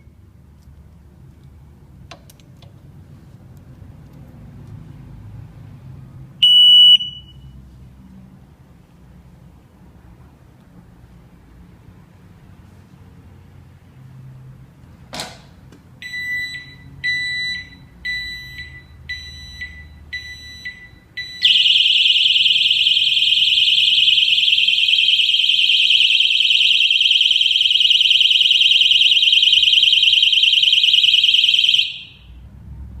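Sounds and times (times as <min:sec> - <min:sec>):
short high beeps: 0:06.4 - 0:07.6
shrill alarm tone: 0:20.6 - 0:32.3.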